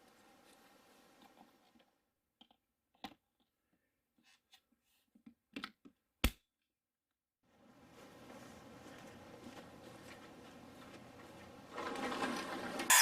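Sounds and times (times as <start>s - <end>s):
plastic parts clicking and tapping: 1.2s - 3.5s.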